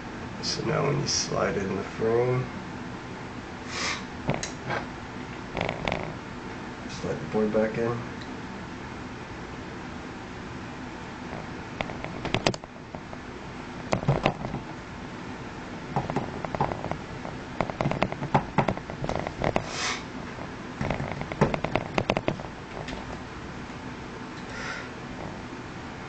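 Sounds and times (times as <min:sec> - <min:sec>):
person sniffing: 0:03.7 - 0:04.1, 0:19.6 - 0:20.1, 0:24.5 - 0:24.9.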